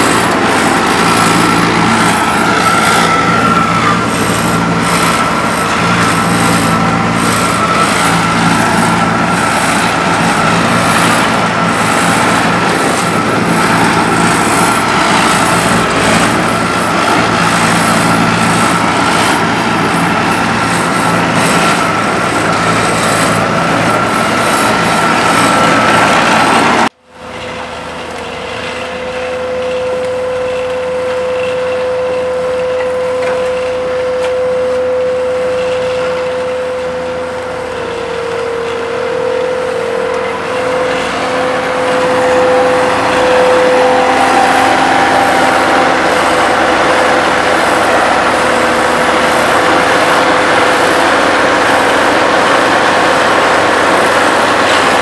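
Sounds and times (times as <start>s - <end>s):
heavy diesel machinery running: 0.0s - 55.0s.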